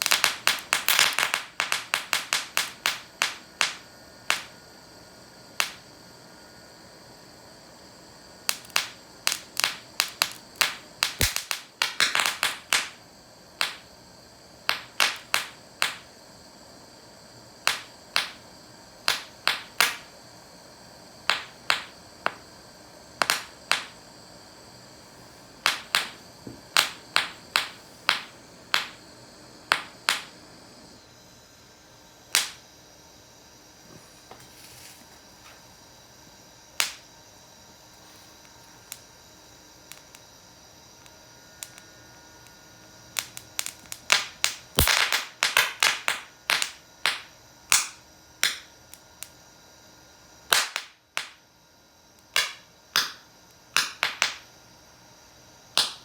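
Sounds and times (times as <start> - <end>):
firecracker pops: 0.0 - 4.6, 5.6 - 5.8, 8.5 - 13.0, 13.6 - 13.9, 14.7 - 16.1, 17.6 - 18.4, 19.1 - 20.1, 21.3 - 22.4, 23.2 - 24.0, 25.6 - 29.0, 29.7 - 30.4, 32.3 - 32.7, 36.8 - 37.0, 43.2 - 49.4, 50.5 - 51.4, 52.2 - 53.2, 53.8 - 54.5, 55.8 - 56.0.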